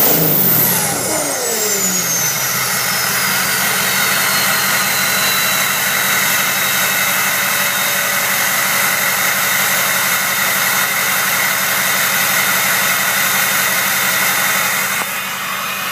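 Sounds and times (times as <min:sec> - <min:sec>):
diesel engine rumble: 0:00.0 - 0:06.2
turbocharger whistle: 0:00.0 - 0:11.7, 0:14.2 - 0:15.9.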